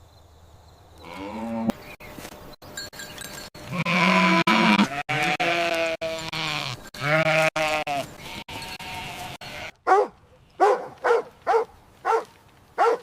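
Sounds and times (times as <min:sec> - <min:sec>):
sheep bleating: 0:01.0 - 0:01.8, 0:03.6 - 0:09.8.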